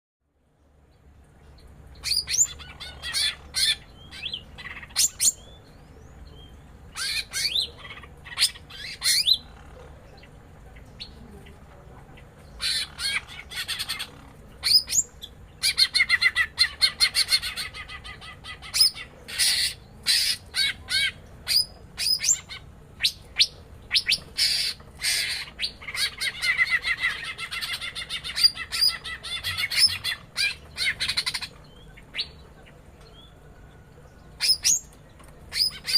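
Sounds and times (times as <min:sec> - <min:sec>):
birds calling sharply: 0:01.4 - 0:35.9.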